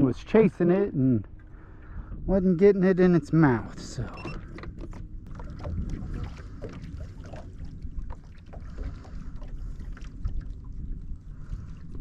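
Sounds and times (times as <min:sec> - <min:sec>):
wind rumble on microphone: 0:01.2 - 0:12.0
waves lapping against boat hull: 0:03.6 - 0:12.0.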